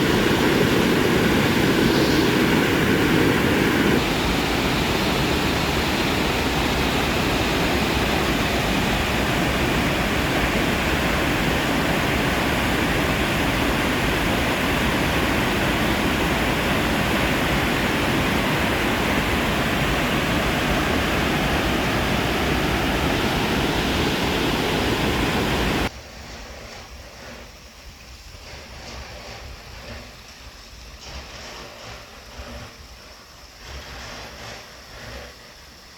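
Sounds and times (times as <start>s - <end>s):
fast-flowing stream rushing: 0.0s - 25.9s.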